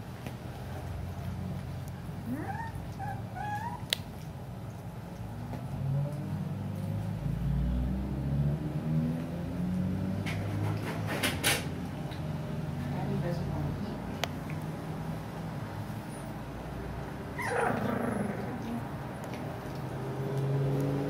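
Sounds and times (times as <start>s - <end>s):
puppy grumbling: 2.2s - 3.9s, 17.3s - 18.9s
puppy whining: 2.2s - 4.3s, 17.3s - 18.8s.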